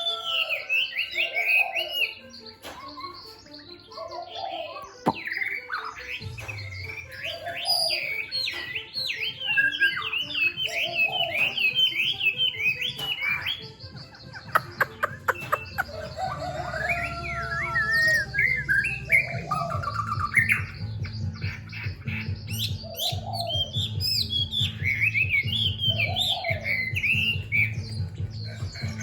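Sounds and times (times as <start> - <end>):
songbird whistling phrases: 0.0 - 29.0.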